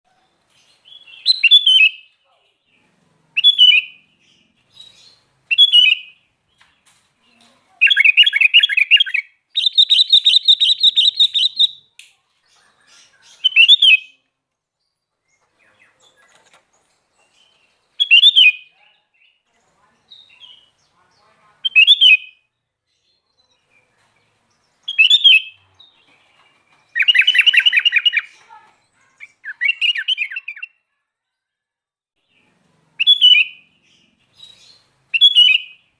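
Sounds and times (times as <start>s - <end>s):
bird whistled phrases: 0.9s - 2.1s, 3.4s - 4.0s, 5.0s - 6.2s, 7.8s - 11.9s, 12.7s - 14.2s, 18.0s - 18.7s, 21.6s - 22.5s, 24.9s - 25.6s, 26.9s - 28.4s, 29.0s - 30.8s, 33.0s - 33.6s, 34.5s - 35.8s
bird rapid chattering: 7.8s - 14.1s, 26.9s - 30.7s.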